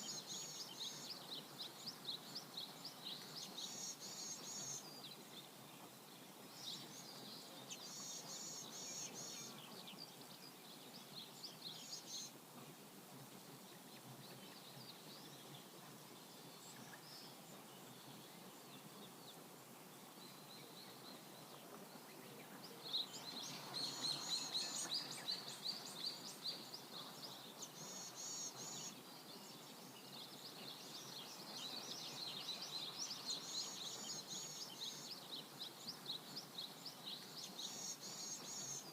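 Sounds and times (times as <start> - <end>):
faint background hiss: 0.0 - 38.9
small birds chirping: 0.0 - 38.9.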